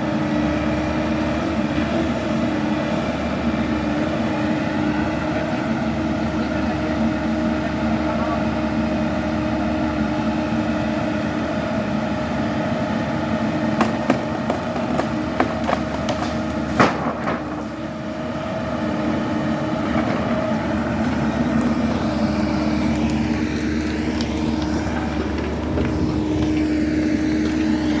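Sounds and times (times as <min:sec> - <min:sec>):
engine running: 0:00.0 - 0:28.0
sharp cracks or knocks: 0:13.8 - 0:17.7.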